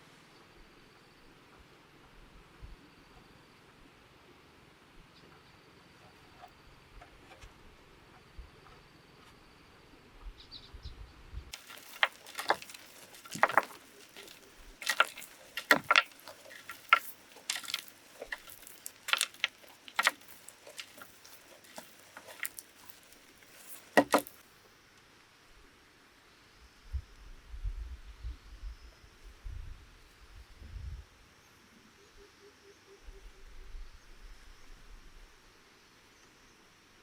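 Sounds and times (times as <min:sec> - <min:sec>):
knocks of hard material: 0:11.6 - 0:24.4.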